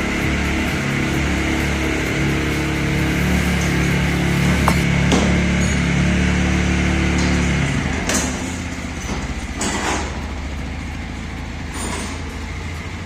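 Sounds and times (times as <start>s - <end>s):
motorcycle engine idling: 0.0s - 5.5s, 8.4s - 13.0s.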